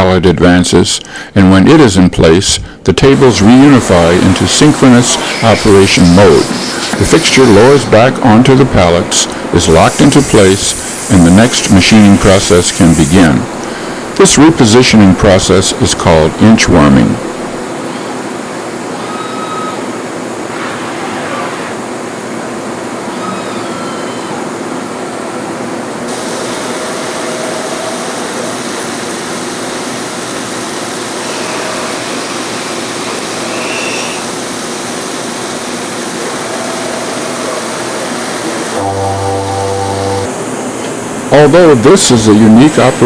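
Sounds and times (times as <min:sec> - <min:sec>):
machine hiss: 0:03.1 - 0:16.5, 0:26.1 - 0:40.9
faint machine whining tones: 0:18.9 - 0:20.0.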